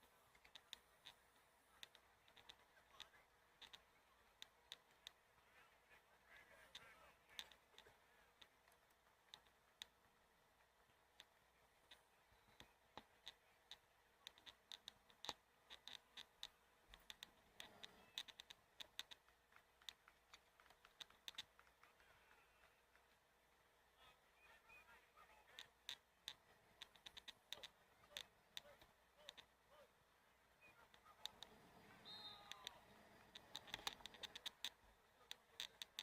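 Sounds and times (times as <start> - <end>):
faint sharp clicks: 0.3 - 5.2, 10.6 - 23.2, 24.8 - 29.6, 30.6 - 36.0.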